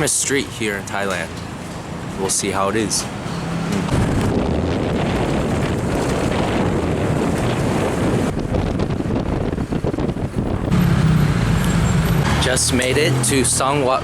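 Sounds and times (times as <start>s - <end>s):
wind buffeting microphone: 3.1s - 14.0s.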